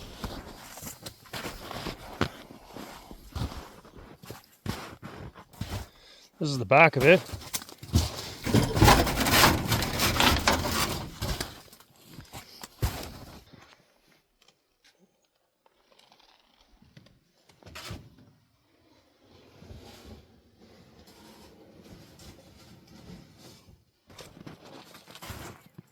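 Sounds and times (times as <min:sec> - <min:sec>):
crunching rustling handling noise: 0:07.0 - 0:11.8
knocks and clunks: 0:07.9 - 0:11.6.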